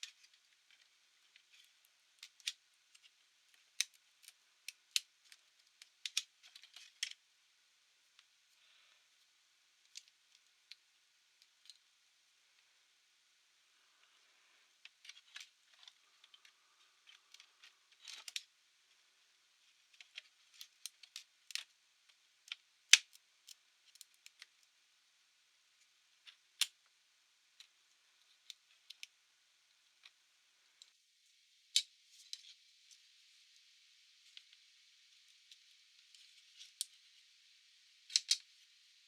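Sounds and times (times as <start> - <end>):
laptop and small tools clicking: 0.0 - 7.2, 14.8 - 18.5, 38.1 - 38.6.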